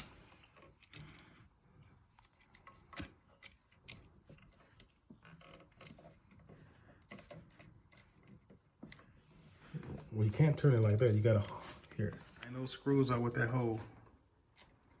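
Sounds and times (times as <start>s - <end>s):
faint clicks and taps: 2.2s - 12.6s.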